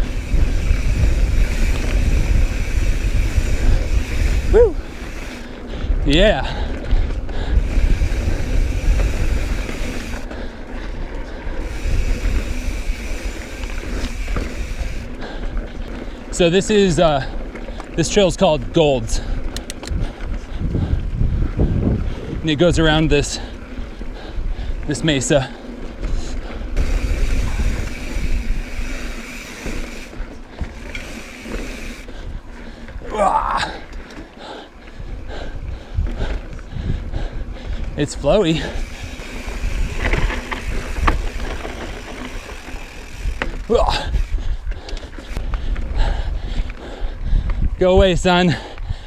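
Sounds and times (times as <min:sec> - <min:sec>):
bike tyres crunching on dirt: 0:00.0 - 0:48.8
wind buffeting microphone: 0:00.0 - 0:49.0
bike knocking over trail: 0:38.8 - 0:44.3.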